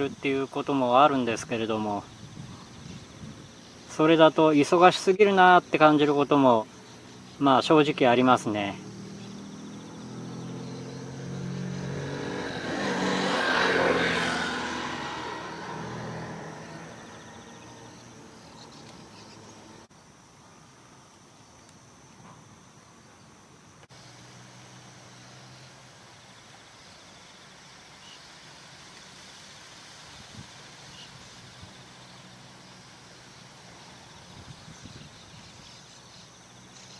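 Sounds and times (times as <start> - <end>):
vehicle passing by: 0.0 - 19.9, 23.9 - 26.3.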